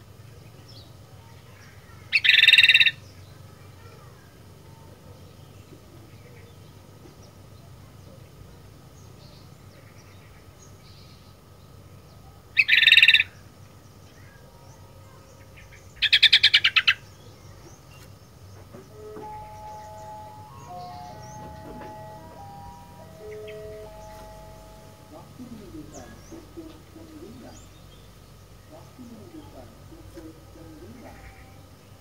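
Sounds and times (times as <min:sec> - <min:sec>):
bird calling: 0:02.2 - 0:03.0, 0:12.6 - 0:13.4
faint steady background: 0:13.2 - 0:32.0.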